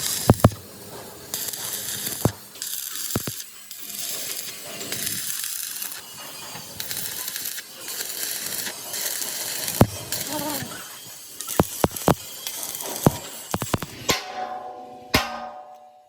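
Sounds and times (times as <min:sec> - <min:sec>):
crackling hiss of metal work: 0:00.0 - 0:15.9
sharp metal knock: 0:13.7 - 0:16.0.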